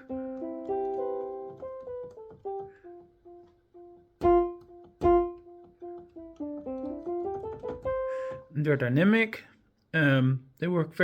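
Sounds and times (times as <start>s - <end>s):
digital keyboard notes: 0.0s - 8.1s.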